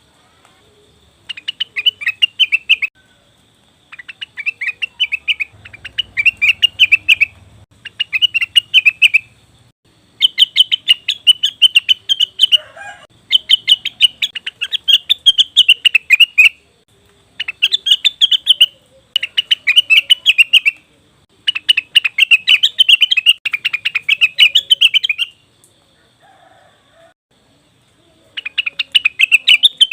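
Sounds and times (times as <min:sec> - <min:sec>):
bird calling in rapid chattering notes: 0:01.3 - 0:02.9, 0:03.9 - 0:09.4, 0:10.2 - 0:12.6, 0:13.3 - 0:16.6, 0:17.4 - 0:20.8, 0:21.4 - 0:25.4, 0:28.4 - 0:29.9.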